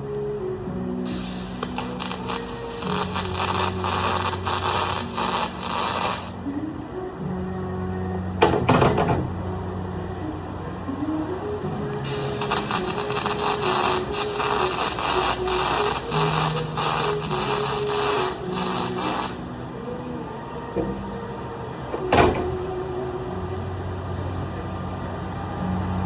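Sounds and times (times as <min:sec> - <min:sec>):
welding arc crackling hiss: 0:01.1 - 0:06.4, 0:12.1 - 0:19.5
welding machine hum: 0:01.1 - 0:06.4, 0:12.0 - 0:19.5.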